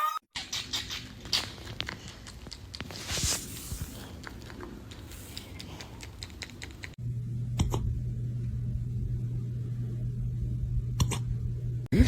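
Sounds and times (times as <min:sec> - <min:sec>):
steady low hum: 0:03.8 - 0:12.0.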